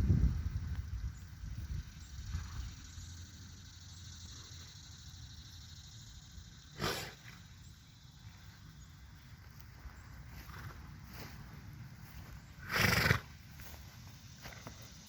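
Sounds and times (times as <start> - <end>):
horse snorting: 12.6 - 13.3.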